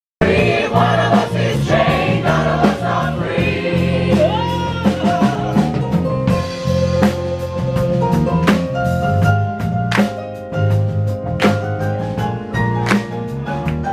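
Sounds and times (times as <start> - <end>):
gospel choir singing: 0.2 - 6.0
drum beat: 0.2 - 8.8
bass line: 0.2 - 13.9.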